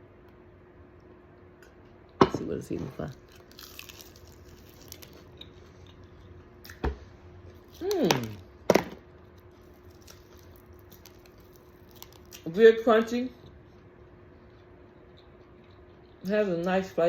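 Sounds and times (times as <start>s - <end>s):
crunch of biting fried chicken: 3.2s - 6.0s.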